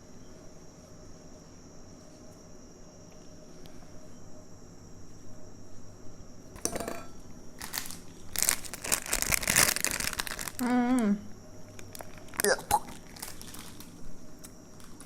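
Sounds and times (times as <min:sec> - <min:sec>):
plastic packaging crinkling: 0:07.6 - 0:10.7, 0:11.7 - 0:15.0
short voiced sound: 0:12.4 - 0:12.9.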